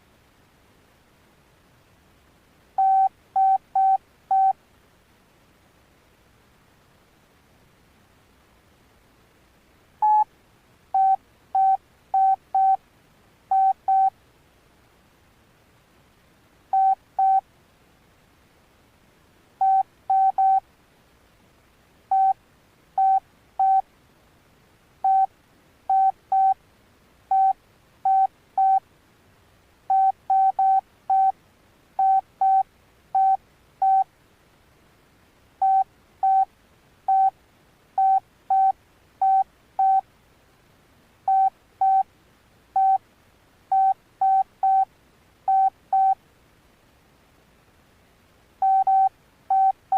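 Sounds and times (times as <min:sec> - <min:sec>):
phone key beeps: 0:02.8 - 0:04.6, 0:10.0 - 0:10.3, 0:11.0 - 0:12.8, 0:13.5 - 0:14.1, 0:16.8 - 0:17.4, 0:19.6 - 0:20.6, 0:22.1 - 0:22.4, 0:23.0 - 0:23.8, 0:25.0 - 0:25.3, 0:25.9 - 0:26.6, 0:27.3 - 0:28.8, 0:29.9 - 0:31.3, 0:32.0 - 0:32.6, 0:33.2 - 0:34.0, 0:35.6 - 0:36.5, 0:37.1 - 0:37.3, 0:38.0 - 0:40.0, 0:41.3 - 0:42.0, 0:42.8 - 0:43.0, 0:43.7 - 0:44.8, 0:45.5 - 0:46.2, 0:48.6 - 0:49.8.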